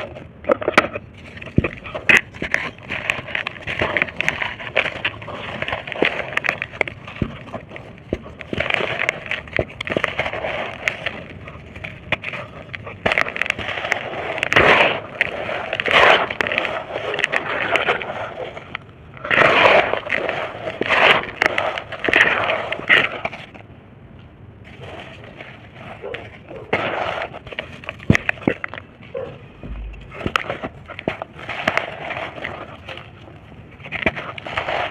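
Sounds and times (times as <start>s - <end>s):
brick and dirt crunching: 0.0s - 23.5s, 24.7s - 34.9s.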